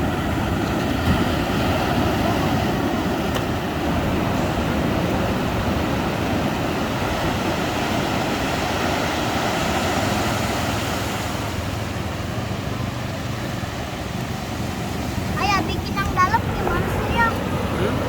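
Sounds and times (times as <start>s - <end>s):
waves breaking on beach: 0.0s - 18.0s.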